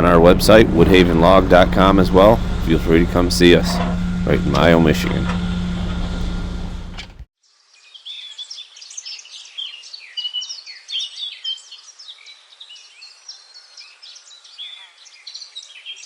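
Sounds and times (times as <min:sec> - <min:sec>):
vehicle engine running: 0:00.0 - 0:07.3
small birds chirping: 0:07.4 - 0:16.0.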